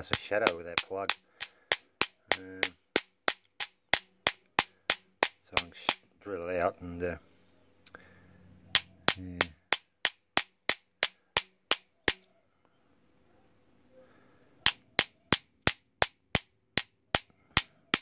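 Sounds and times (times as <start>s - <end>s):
hammer tapping brass padlock: 0.0s - 6.0s.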